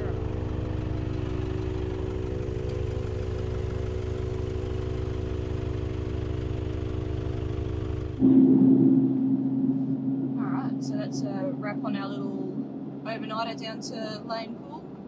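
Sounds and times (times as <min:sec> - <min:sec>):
vehicle engine running steadily: 0:00.0 - 0:15.0.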